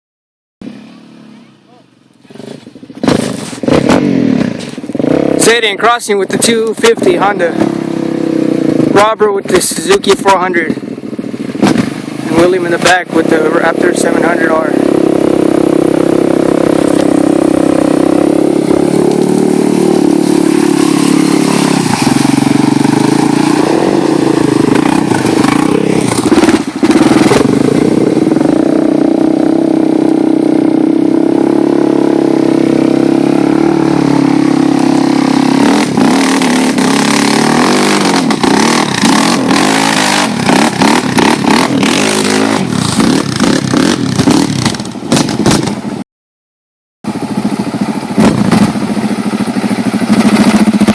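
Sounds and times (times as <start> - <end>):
atv engines revving: 0.6 - 46.0, 47.1 - 50.9
sharp clatter: 24.4 - 28.3, 35.6 - 45.9, 50.1 - 50.9.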